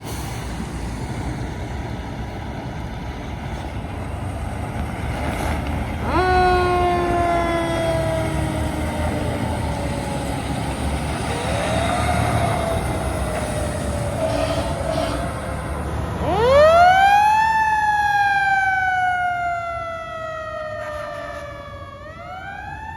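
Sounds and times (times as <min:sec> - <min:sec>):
fire truck engines rumbling: 0:00.0 - 0:22.9
fire truck siren wailing: 0:06.0 - 0:22.9.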